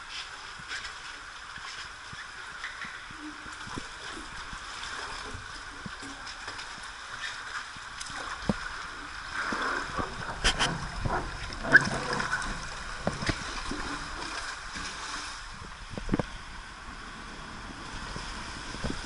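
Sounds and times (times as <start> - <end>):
splashes and knocks: 2.8 - 16.3
water rushing down slide: 9.2 - 15.7.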